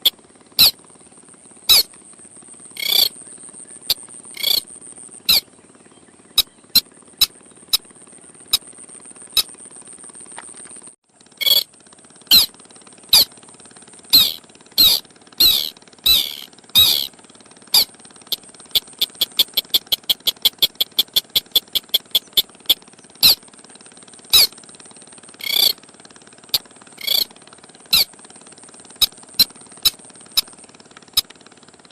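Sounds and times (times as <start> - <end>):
bird call sliding notes: 0.0 - 0.8, 1.7 - 1.9, 2.8 - 3.1, 3.9 - 4.6, 5.3 - 5.5, 11.4 - 11.6, 14.1 - 17.1, 17.8 - 23.4, 24.3 - 24.5, 25.4 - 25.8, 27.0 - 27.3
short ticking bird notes: 0.0 - 0.8, 1.7 - 1.9, 2.8 - 3.2, 3.8 - 4.7, 5.3 - 5.5, 9.3 - 9.5, 11.4 - 11.7, 12.3 - 12.5, 14.1 - 17.1, 17.7 - 23.4, 24.3 - 24.5, 25.4 - 25.8, 27.0 - 27.3.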